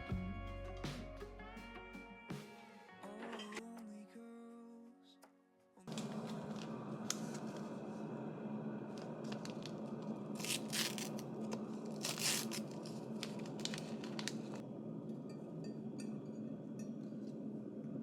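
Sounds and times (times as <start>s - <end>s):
packaging rustling: 5.9s - 7.9s, 8.9s - 14.6s
steady low hum: 5.9s - 18.0s.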